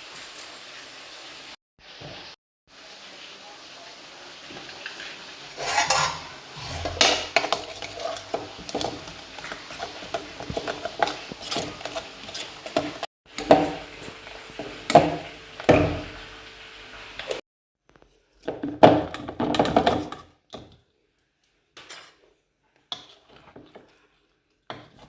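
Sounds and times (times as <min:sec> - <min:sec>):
metal utensils scraping pots: 0:04.8 - 0:13.8.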